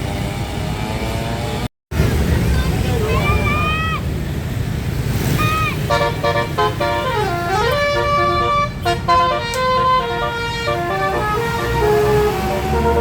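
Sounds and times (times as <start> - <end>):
bus engine rumble: 1.9 - 13.0
multi-tone bus horn melody: 5.8 - 13.0.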